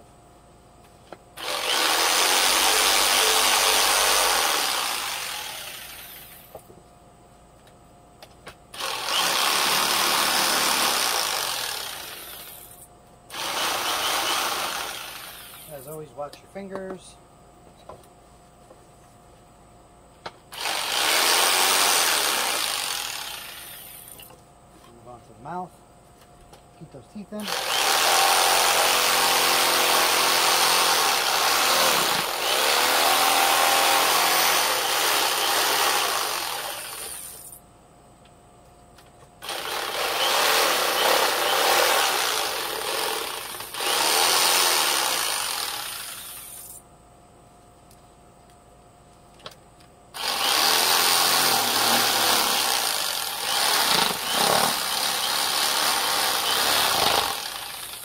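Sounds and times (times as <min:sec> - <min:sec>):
electric saw cutting wood: 0:01.4 - 0:06.5, 0:08.8 - 0:16.0, 0:20.5 - 0:24.3, 0:27.4 - 0:37.5, 0:39.4 - 0:46.8, 0:50.2 - 0:58.0.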